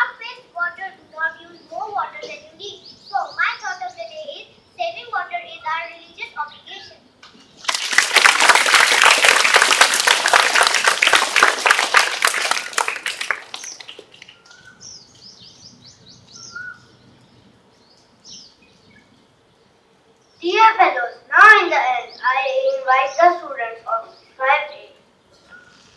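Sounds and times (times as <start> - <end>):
birds chirping: 0.0 - 25.9
audience clapping: 7.6 - 14.4.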